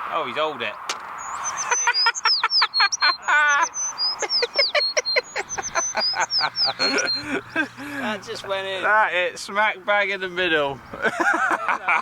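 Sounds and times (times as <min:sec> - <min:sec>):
high falling bird whistles: 0:01.2 - 0:07.2.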